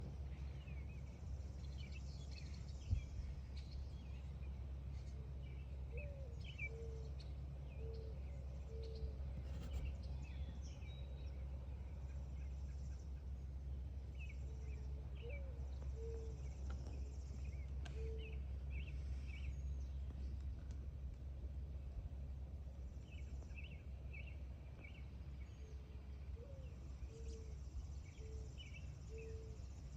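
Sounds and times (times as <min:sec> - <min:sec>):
songbirds singing and chirping: 0:00.0 - 0:29.9
low bird call: 0:14.3 - 0:19.6.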